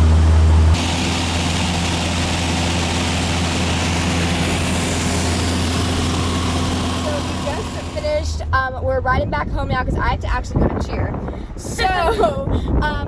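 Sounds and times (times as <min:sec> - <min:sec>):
plane engine drone in cabin: 0:00.0 - 0:08.5.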